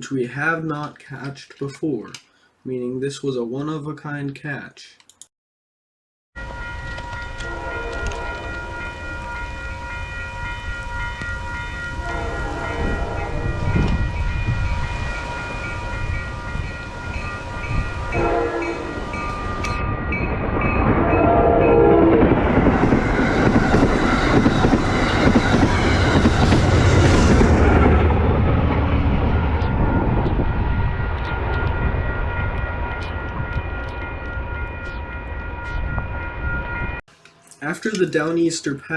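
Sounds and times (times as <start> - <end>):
train horn chord: 6.4 - 19.8, 21.0 - 22.5
train wheels clattering on rails: 22.1 - 30.5.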